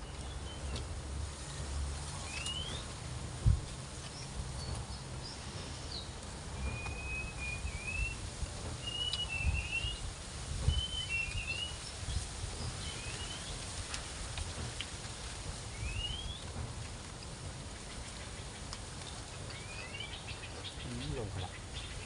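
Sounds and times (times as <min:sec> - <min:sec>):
birds chirping: 0:00.0 - 0:00.9, 0:02.2 - 0:03.0, 0:03.9 - 0:13.8, 0:15.7 - 0:16.5, 0:17.6 - 0:22.0
wind rumble on microphone: 0:00.0 - 0:22.0.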